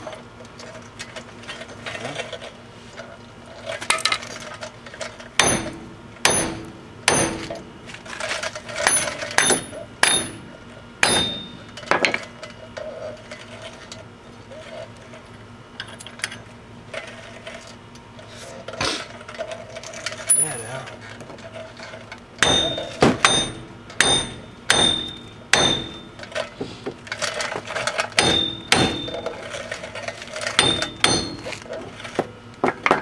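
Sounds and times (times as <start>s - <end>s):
hammer striking steel: 5.4s - 7.8s, 8.8s - 11.7s, 22.4s - 26.2s, 28.2s - 29.3s, 30.6s - 31.6s.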